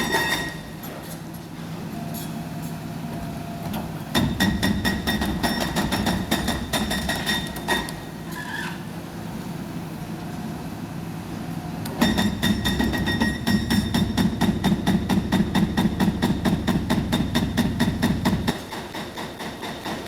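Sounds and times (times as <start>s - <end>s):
hydraulic breaker hammering concrete: 4.1s - 8.0s, 12.0s - 20.0s.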